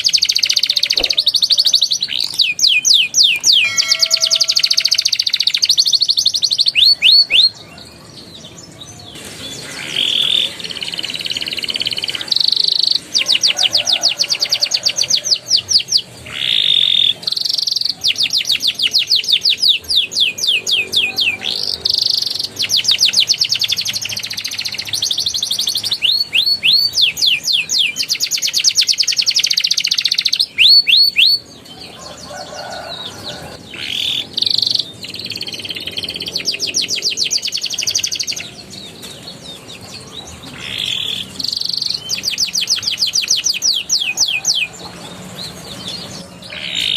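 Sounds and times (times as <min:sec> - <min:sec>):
canary singing trills: 0:00.0 - 0:46.9.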